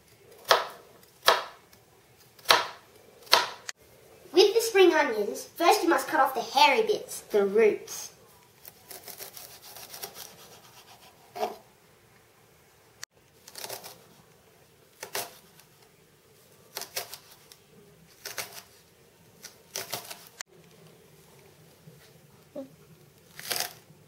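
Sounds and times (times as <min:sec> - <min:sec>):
knife slicing strokes: 0:08.6 - 0:11.5.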